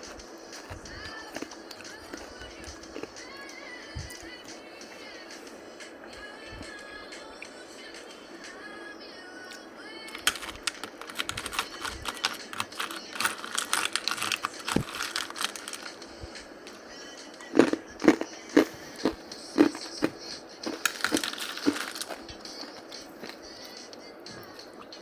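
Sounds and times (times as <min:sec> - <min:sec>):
ice being chewed: 0:00.0 - 0:03.2, 0:10.2 - 0:16.1, 0:17.4 - 0:23.4.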